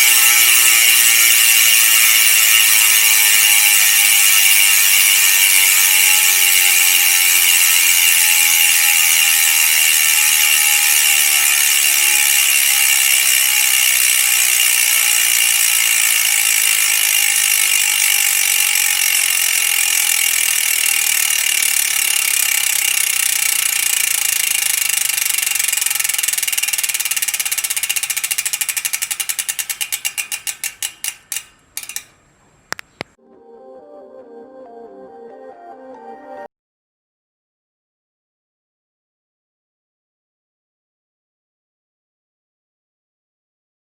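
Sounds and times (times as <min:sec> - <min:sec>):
bike hub ratchet buzzing: 0:00.0 - 0:32.2.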